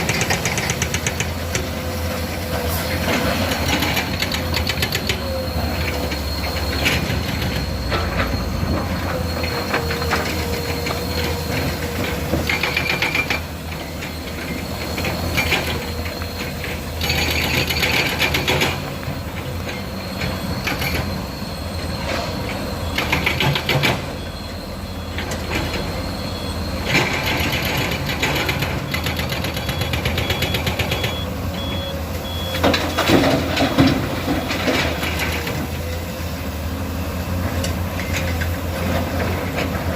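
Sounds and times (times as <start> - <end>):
excavator diesel engine running: 0.0 - 39.9
high hydraulic whine: 0.0 - 39.9.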